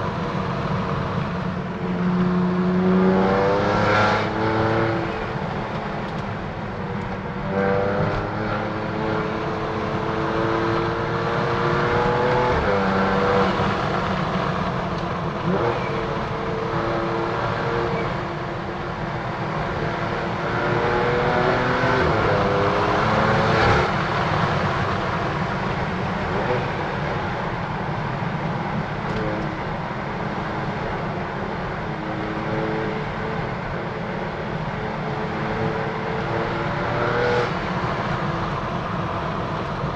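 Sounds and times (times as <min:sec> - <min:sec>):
car engine accelerating through gears: 0:00.0 - 0:06.3, 0:07.0 - 0:18.5, 0:19.2 - 0:27.6, 0:34.7 - 0:39.9.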